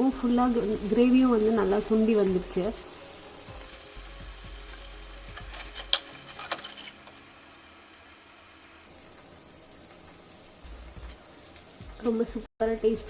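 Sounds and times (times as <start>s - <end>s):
chicken sizzling in oil: 0.0s - 13.0s.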